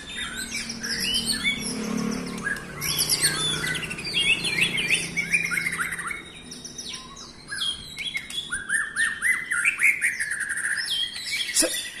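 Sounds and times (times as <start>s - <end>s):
bird singing whistled phrases: 2.4s - 12.0s.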